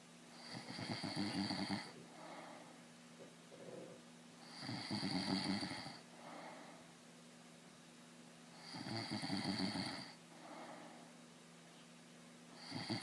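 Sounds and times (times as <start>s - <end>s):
man snoring: 0.4s - 2.0s, 4.4s - 6.0s, 8.6s - 10.2s, 12.6s - 13.0s
soft breathing: 1.8s - 2.9s, 5.9s - 7.0s, 10.2s - 11.9s.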